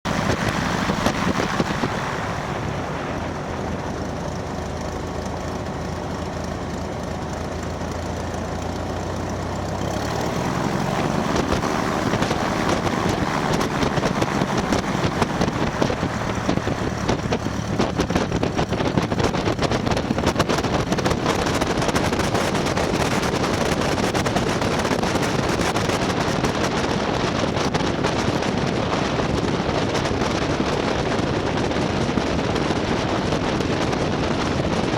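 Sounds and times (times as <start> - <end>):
light aircraft engine and propeller: 0.0 - 34.9.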